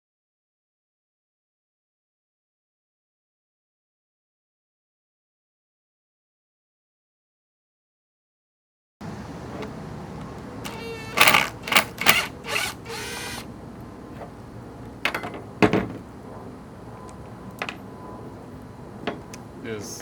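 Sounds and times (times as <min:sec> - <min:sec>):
hand ratchet clicking: 0:10.6 - 0:13.4.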